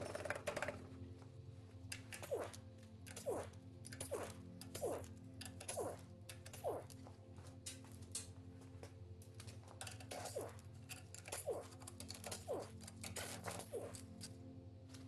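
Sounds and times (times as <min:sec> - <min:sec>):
tools and parts clicking: 0:01.8 - 0:07.0, 0:07.6 - 0:08.4, 0:09.2 - 0:14.4.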